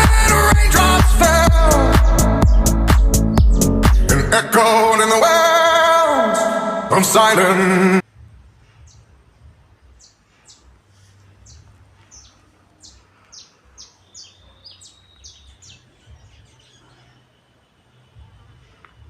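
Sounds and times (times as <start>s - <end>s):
high bird chirps: 1.6s - 4.1s, 11.5s - 17.5s.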